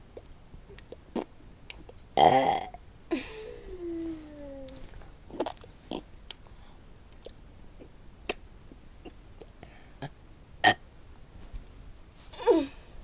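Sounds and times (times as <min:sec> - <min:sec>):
faint mouth clicks and smacks: 0:00.1 - 0:01.1, 0:04.6 - 0:08.4, 0:09.4 - 0:09.6
person burping: 0:02.2 - 0:03.3.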